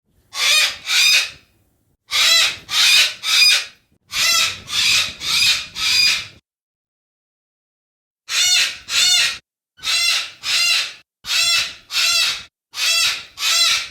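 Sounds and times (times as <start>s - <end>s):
cockatoo screeching: 0.3s - 1.4s, 2.1s - 6.3s, 8.3s - 13.9s.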